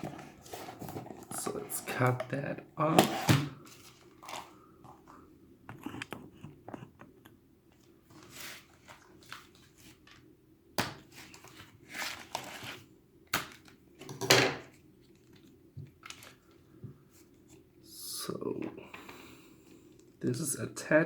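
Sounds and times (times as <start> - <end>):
plastic and cardboard crinkling: 0.0 - 2.4, 11.0 - 17.6.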